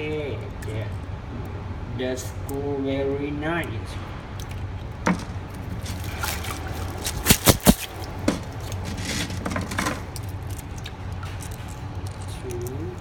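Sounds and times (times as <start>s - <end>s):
water trickling and splashing: 3.9s - 13.0s.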